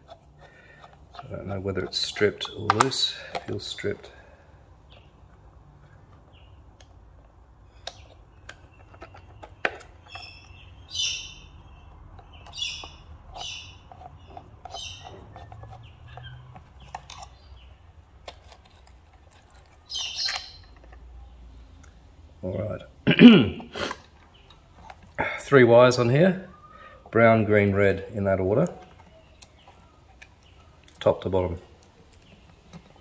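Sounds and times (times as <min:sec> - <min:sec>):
hand tools clicking and tapping: 0:00.0 - 0:03.6, 0:06.0 - 0:10.5, 0:12.0 - 0:17.4.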